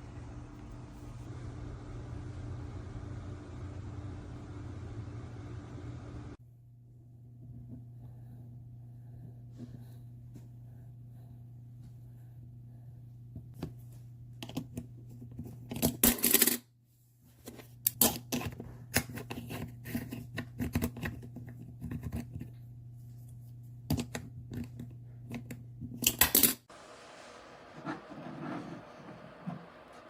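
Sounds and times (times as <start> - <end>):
steady low hum: 0.0 - 14.3.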